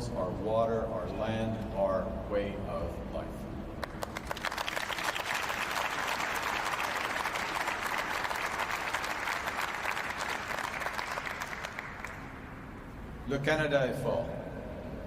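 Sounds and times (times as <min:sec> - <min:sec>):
audience applauding: 0:03.8 - 0:12.4.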